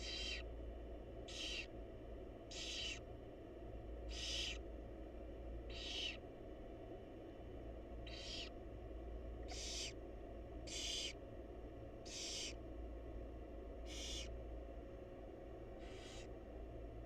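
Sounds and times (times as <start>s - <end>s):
owl chicks hissing: 0.0s - 0.5s, 1.3s - 1.7s, 2.5s - 3.1s, 4.1s - 4.7s, 5.7s - 6.2s, 8.0s - 8.6s, 9.4s - 10.0s, 10.6s - 11.2s, 12.0s - 12.6s, 13.8s - 14.4s, 15.8s - 16.3s
low hum: 0.0s - 17.0s.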